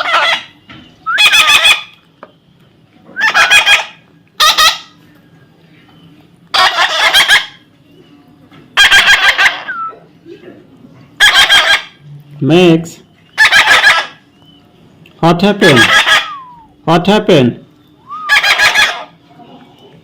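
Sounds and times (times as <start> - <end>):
parrot screeching: 0.0 - 2.0, 3.2 - 5.0, 6.5 - 7.6, 8.8 - 9.9, 11.2 - 12.0, 13.4 - 14.2, 15.6 - 16.6, 18.1 - 19.2.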